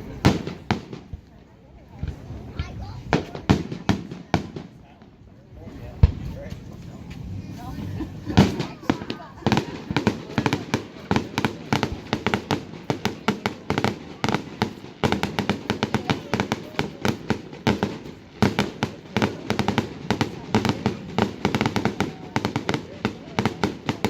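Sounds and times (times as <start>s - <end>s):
fireworks bangs and crackling: 0.0s - 24.0s
low rumbling: 5.5s - 10.1s.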